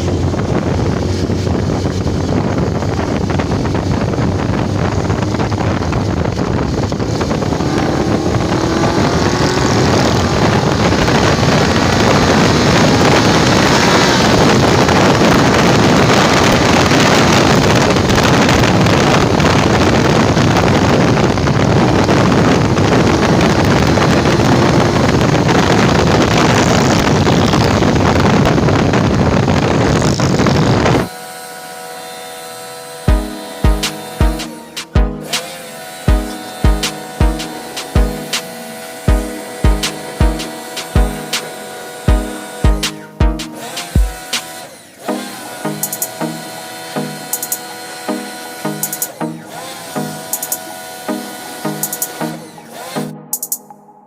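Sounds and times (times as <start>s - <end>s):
wind rushing: 0.0s - 31.1s
motorcycle engine running: 0.0s - 53.6s.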